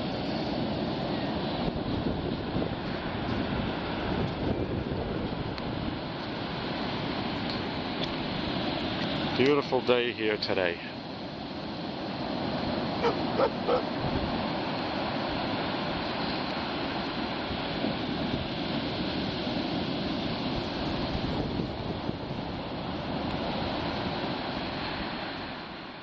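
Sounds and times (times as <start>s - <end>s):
wind on microphone: 0.0s - 6.2s, 17.6s - 24.9s
surf breaking on beach: 11.8s - 26.0s.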